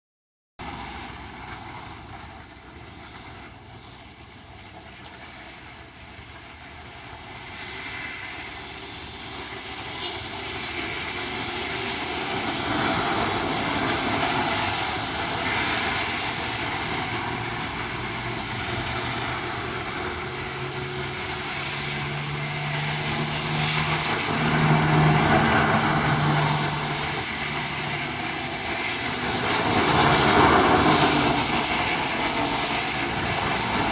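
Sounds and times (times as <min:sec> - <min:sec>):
wind and rain rushing: 0:00.6 - 0:33.9.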